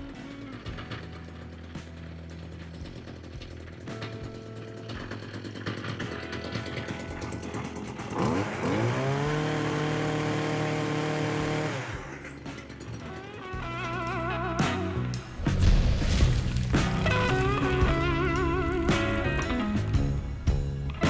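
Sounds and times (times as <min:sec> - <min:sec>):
pole saw engine revving: 0:05.1 - 0:13.4, 0:14.0 - 0:20.2.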